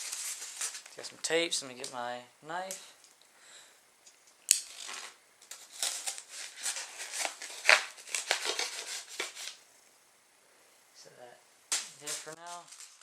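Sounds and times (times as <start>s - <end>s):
knife cutting packing tape: 4.5s - 9.6s, 11.7s - 13.0s.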